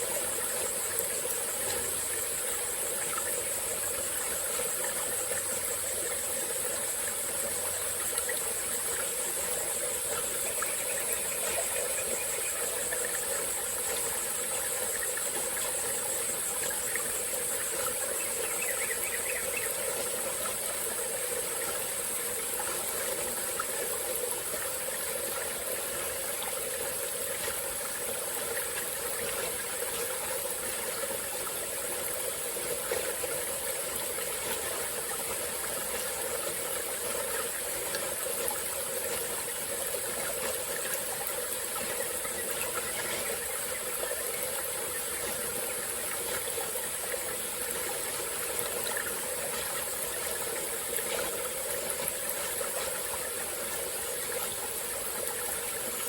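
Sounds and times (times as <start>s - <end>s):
high-pitched insect chorus: 0.0s - 56.0s
small stream flowing: 0.0s - 56.0s.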